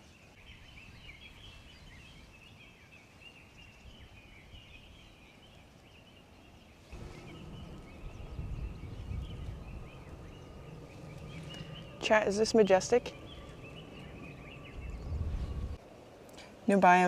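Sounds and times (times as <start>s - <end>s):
faint birds chirping: 0.0s - 17.0s
low rustling noise: 6.6s - 16.8s.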